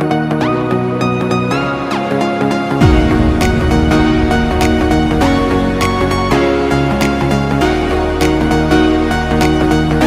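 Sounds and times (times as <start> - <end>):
synth chords over a beat: 2.8 - 7.8.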